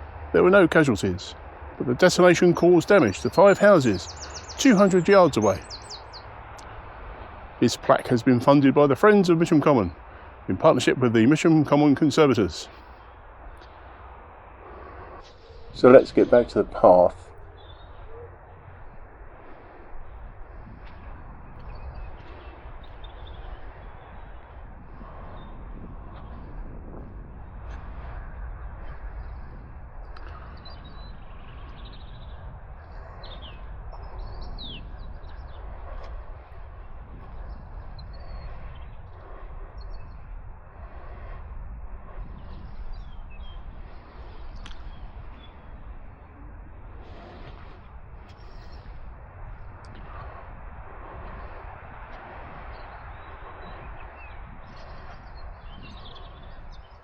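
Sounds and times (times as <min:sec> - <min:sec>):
bird chirps: 0:02.0 - 0:06.3, 0:15.2 - 0:18.8, 0:21.6 - 0:24.4, 0:30.1 - 0:36.2, 0:37.3 - 0:40.3, 0:42.4 - 0:45.6, 0:52.6 - 0:57.0
faint bird chirps: 0:03.0 - 0:06.3, 0:15.2 - 0:18.8, 0:37.3 - 0:40.3
low rumble: 0:12.1 - 0:57.0.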